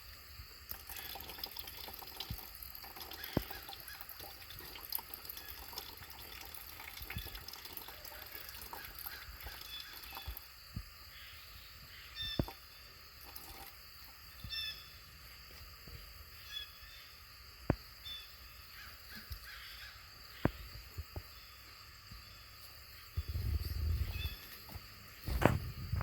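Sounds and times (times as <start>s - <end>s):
faint bird calls: 3.0s - 4.2s, 7.2s - 13.0s, 14.3s - 15.0s, 16.4s - 17.2s, 18.0s - 25.6s.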